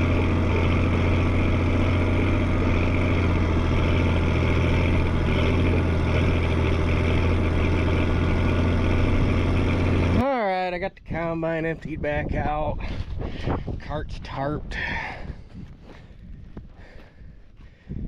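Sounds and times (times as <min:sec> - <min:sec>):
diesel engine humming: 0:00.0 - 0:10.3.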